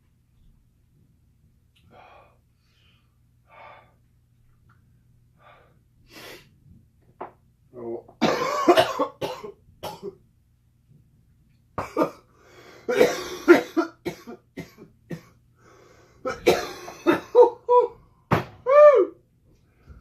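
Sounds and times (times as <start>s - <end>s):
man coughing: 8.2s - 10.1s, 11.8s - 12.2s, 12.9s - 15.3s, 16.3s - 17.9s.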